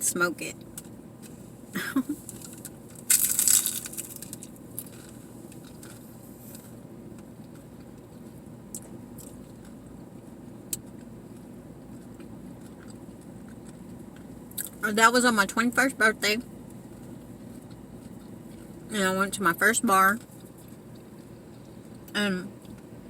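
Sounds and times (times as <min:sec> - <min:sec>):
low steady hum: 0:00.0 - 0:23.0
crunchy bite into taco: 0:02.2 - 0:09.9.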